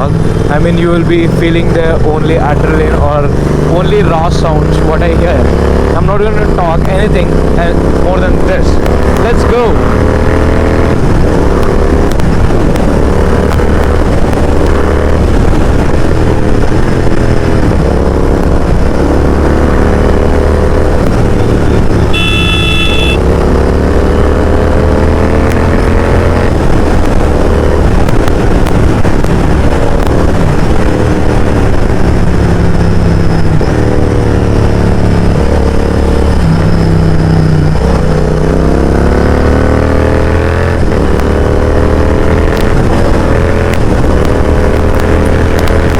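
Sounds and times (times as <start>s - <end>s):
motorcycle engine revving: 0.0s - 45.9s
motorcycle horn: 22.1s - 23.3s.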